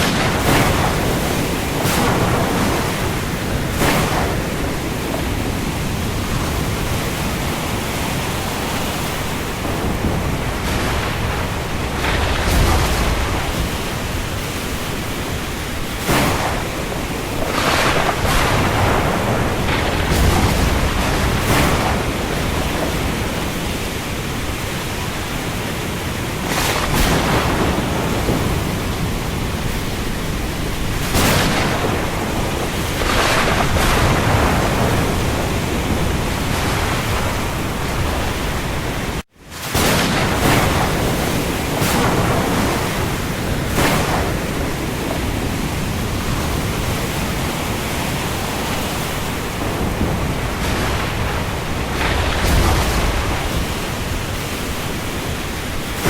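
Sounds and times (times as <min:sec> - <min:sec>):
heavy rain falling on sea: 0:00.0 - 0:56.0.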